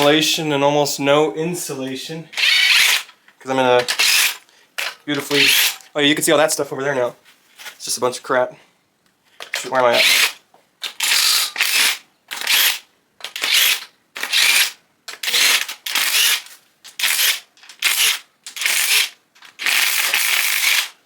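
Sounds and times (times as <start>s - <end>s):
ratchet wrench clicking: 17.0s - 21.0s.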